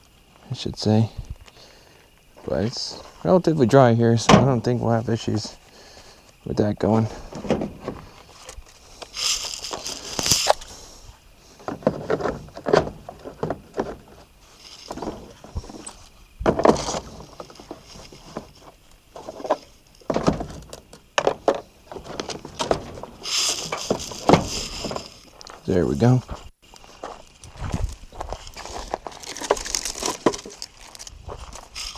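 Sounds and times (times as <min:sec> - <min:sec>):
rustling: 0:07.0 - 0:31.9
wooden knocks and clatter: 0:07.2 - 0:08.3, 0:11.6 - 0:25.3, 0:28.6 - 0:31.5.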